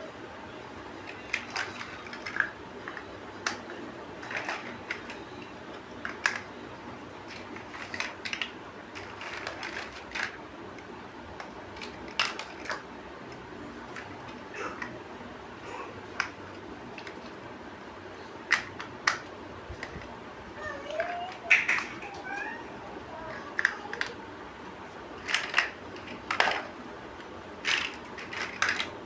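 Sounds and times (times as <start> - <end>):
plastic bricks clicking: 1.1 - 5.2, 7.3 - 10.4, 11.4 - 12.8, 18.5 - 20.1, 20.9 - 22.3, 25.2 - 26.7, 27.6 - 29.0.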